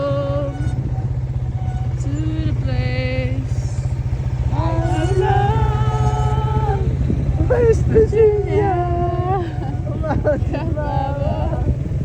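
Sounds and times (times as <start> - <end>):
motorbike rumbling: 0.0 - 12.0
person singing long notes: 4.5 - 12.0.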